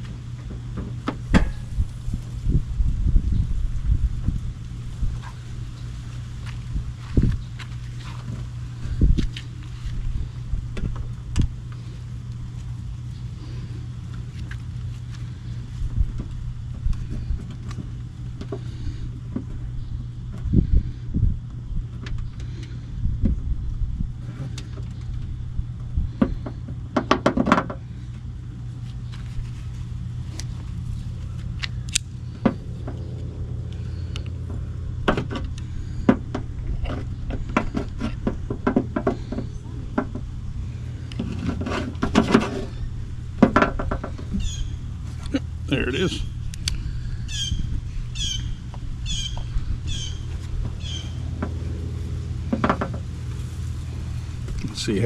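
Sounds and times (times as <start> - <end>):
steady low hum: 0.0 - 55.0
steady low rumble: 0.0 - 55.0
bird calling: 44.3 - 51.4.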